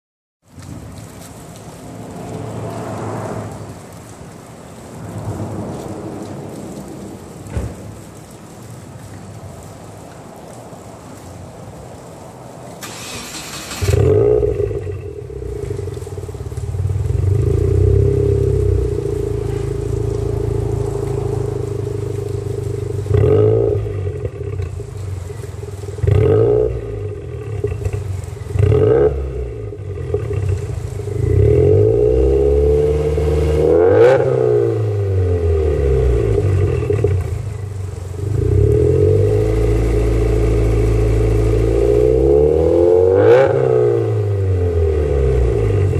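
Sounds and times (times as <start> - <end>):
engine revving: 12.8 - 37.6, 38.2 - 45.9
vehicle engine starting and idling: 12.8 - 42.4.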